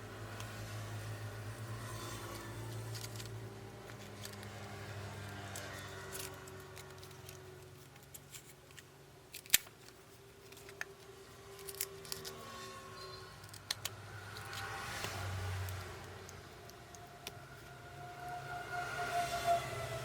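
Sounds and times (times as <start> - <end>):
small tools clicking on phone parts: 2.3 - 17.8.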